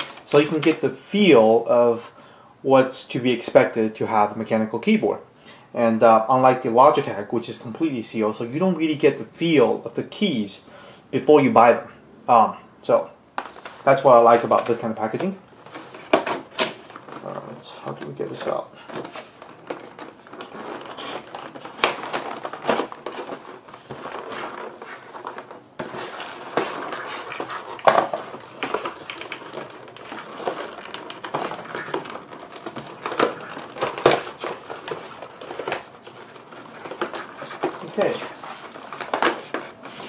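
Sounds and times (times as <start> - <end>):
cardboard and paper rustling: 13.4 - 40.0
knocks and scrapes: 15.6 - 40.0.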